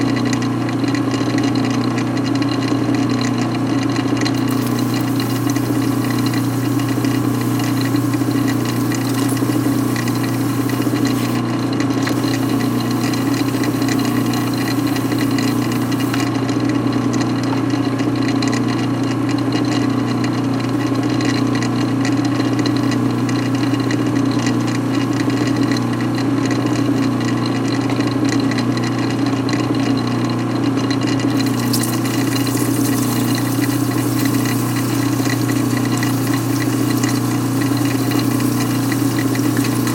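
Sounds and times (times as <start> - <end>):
sandpaper scratchy hiss: 4.4 - 11.4, 12.1 - 16.2, 31.4 - 39.9
electric motor humming: 4.4 - 16.3, 31.3 - 39.9.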